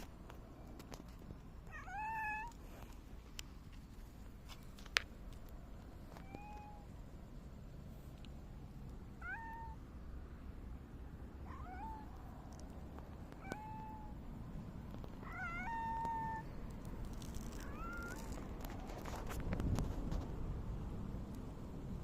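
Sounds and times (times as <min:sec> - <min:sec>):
cat meowing: 0:01.6 - 0:02.6, 0:06.2 - 0:06.9, 0:09.2 - 0:09.8, 0:11.4 - 0:12.2, 0:13.3 - 0:14.2, 0:15.2 - 0:16.6, 0:17.5 - 0:18.3.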